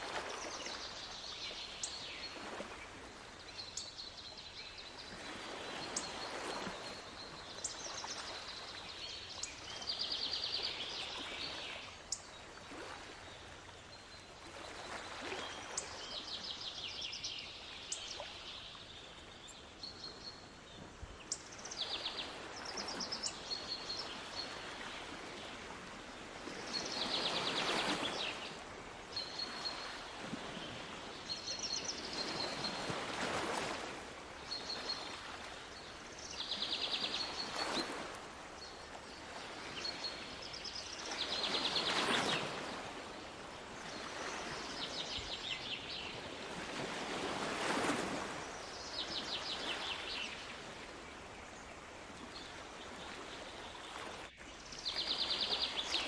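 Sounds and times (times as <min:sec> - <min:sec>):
songbirds chirping and trilling: 0:00.4 - 0:25.6, 0:30.6 - 0:46.4, 0:47.4 - 0:56.0
sea waves washing in: 0:21.7 - 0:56.0.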